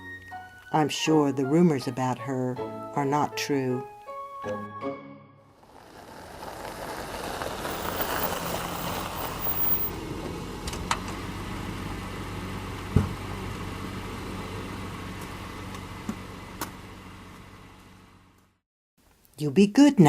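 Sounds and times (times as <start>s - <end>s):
car engine idling: 5.6s - 18.6s
loud thump: 12.9s - 13.2s.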